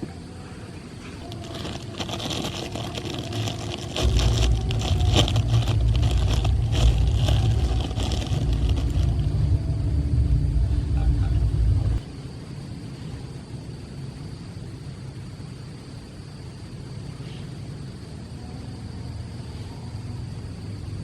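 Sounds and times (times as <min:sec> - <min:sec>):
rain pattering: 0:01.2 - 0:09.6
deep rumble: 0:01.2 - 0:12.1.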